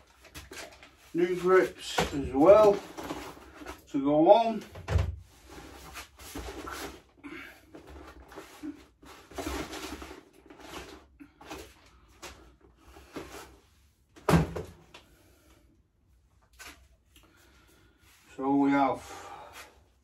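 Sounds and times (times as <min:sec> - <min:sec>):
rustles and clunks of parts: 0:00.0 - 0:03.9, 0:04.6 - 0:15.1.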